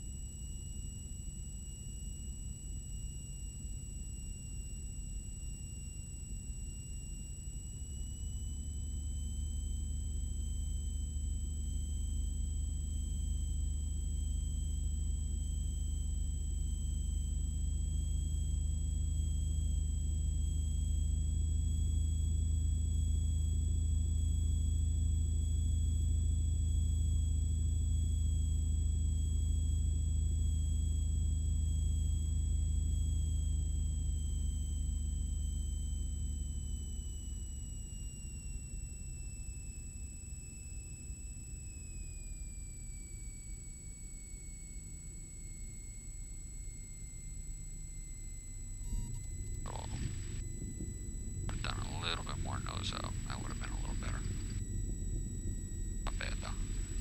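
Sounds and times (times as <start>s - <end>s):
thin high whine: 47.8s - 57.0s
airplane engine and propeller droning: 51.0s - 57.0s.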